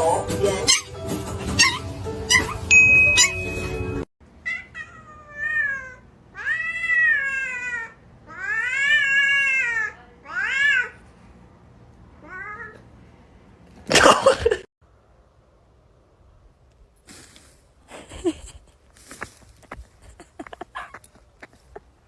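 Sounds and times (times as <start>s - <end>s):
cat meowing: 4.4s - 11.0s.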